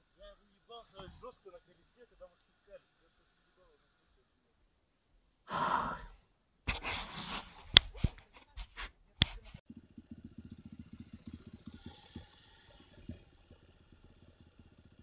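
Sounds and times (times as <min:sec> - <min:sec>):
motorcycle engine idling: 0:09.4 - 0:15.0.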